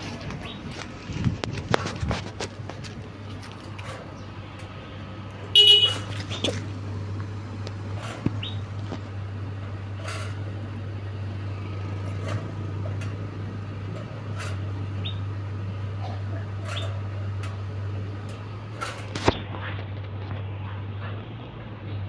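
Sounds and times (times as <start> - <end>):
electric fan humming: 0.0 - 20.2
faint fan whine: 0.0 - 22.0.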